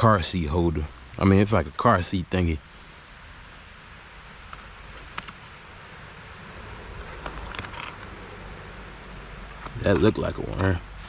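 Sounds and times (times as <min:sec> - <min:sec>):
scraping and rustling soil: 0:03.6 - 0:05.8, 0:07.0 - 0:08.2, 0:09.4 - 0:11.0.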